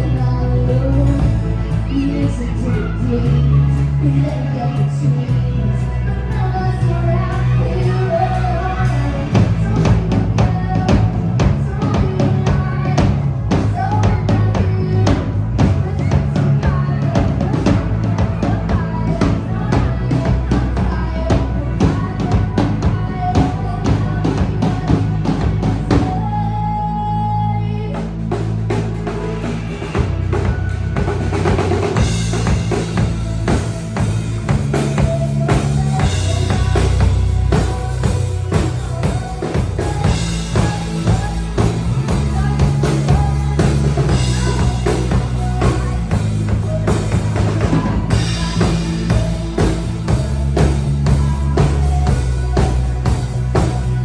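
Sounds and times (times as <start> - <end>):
live band playing: 0.0 - 54.0
bass drum and snare beat: 28.1 - 54.0.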